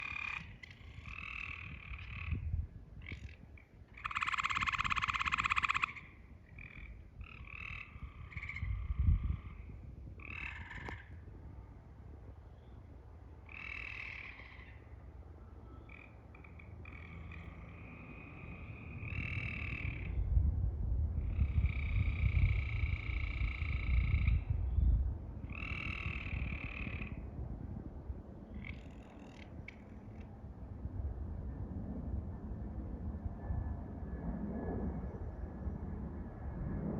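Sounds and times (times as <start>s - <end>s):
harsh croaking animal calls: 0.0s - 9.6s, 10.2s - 11.1s, 13.4s - 14.8s, 15.9s - 20.2s, 25.5s - 27.2s.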